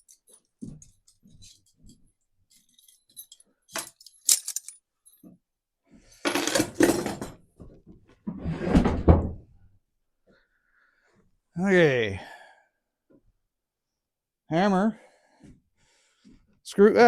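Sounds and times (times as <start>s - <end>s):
metal chains clinking: 2.5s - 5.3s.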